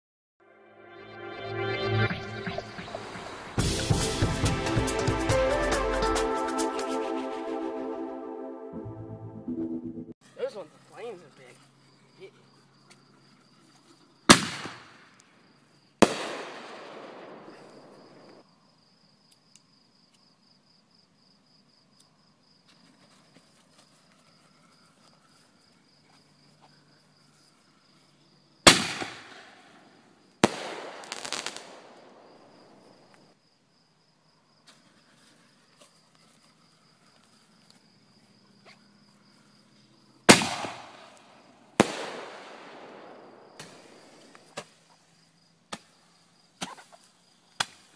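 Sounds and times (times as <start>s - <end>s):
high pulsing chirr: 0.4s - 10.2s
fireworks bangs: 14.3s - 15.1s, 16.0s - 18.4s, 28.7s - 29.6s, 30.4s - 33.1s, 40.3s - 44.6s.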